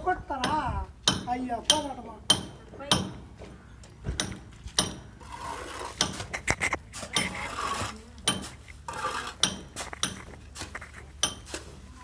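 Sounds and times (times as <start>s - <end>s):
hammer striking chisel: 0.4s - 3.2s, 4.2s - 5.1s, 9.4s - 10.3s, 11.2s - 11.5s.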